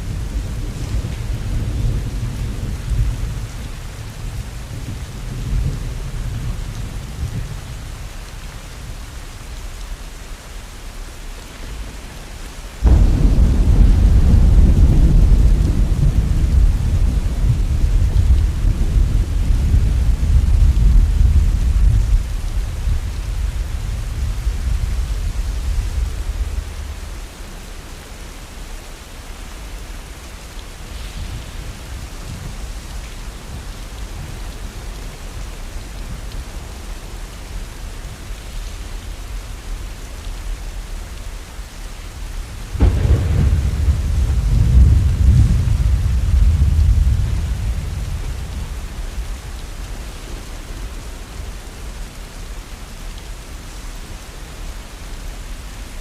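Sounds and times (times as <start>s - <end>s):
steady rain falling: 0.0s - 56.0s
thunder clap: 12.8s - 27.2s, 42.7s - 49.3s
thunder rumbling: 12.8s - 27.8s, 42.5s - 51.6s.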